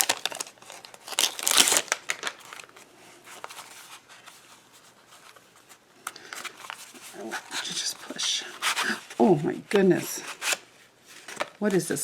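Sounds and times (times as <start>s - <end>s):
cardboard packaging crinkling: 0.0s - 9.4s.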